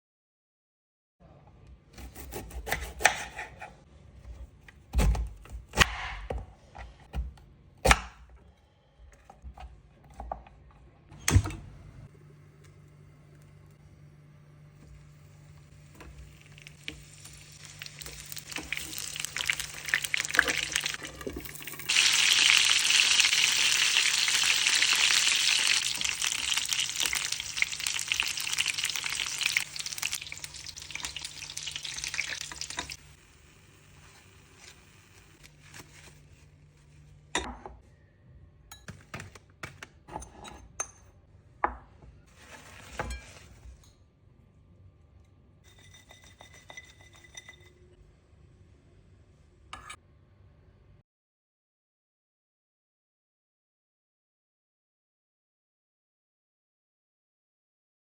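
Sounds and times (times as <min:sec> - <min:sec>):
corn sizzling in hot oil: 0:16.0 - 0:35.4.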